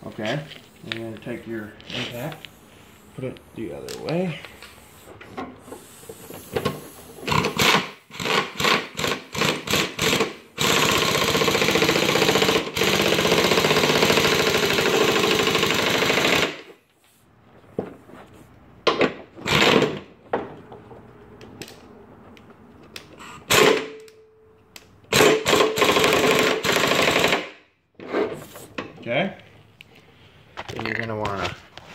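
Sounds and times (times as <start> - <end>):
impact wrench hammering: 6.5 - 16.7.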